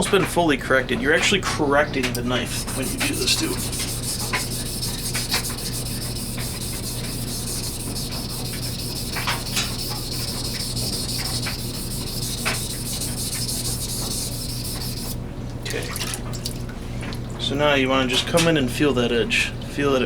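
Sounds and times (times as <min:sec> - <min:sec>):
knife scraping on sharpening stone: 0:02.6 - 0:15.2.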